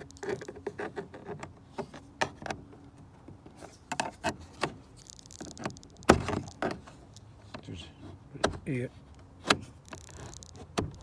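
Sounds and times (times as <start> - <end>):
plastic tool prying trim panel: 8.4 - 8.7, 9.4 - 11.0.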